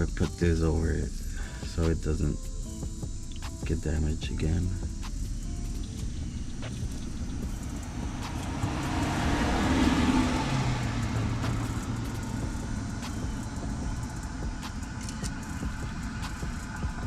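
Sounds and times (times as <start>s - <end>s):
vehicle passing by: 5.0s - 17.0s.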